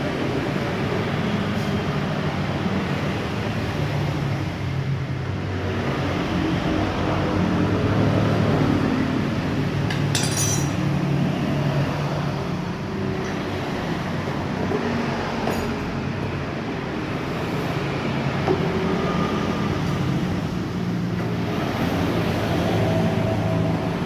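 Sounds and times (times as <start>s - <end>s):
metallic clink: 9.9s - 10.9s.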